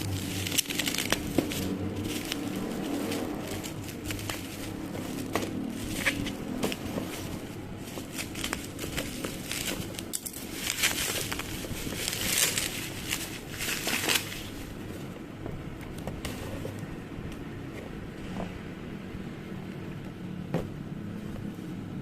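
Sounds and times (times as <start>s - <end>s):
plastic packaging crinkling: 0.0s - 15.2s.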